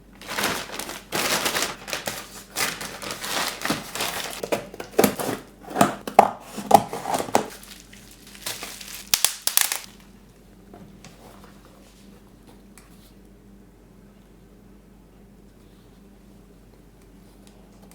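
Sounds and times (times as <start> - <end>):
packaging crinkling and tearing: 0.2 - 6.0, 6.6 - 10.0.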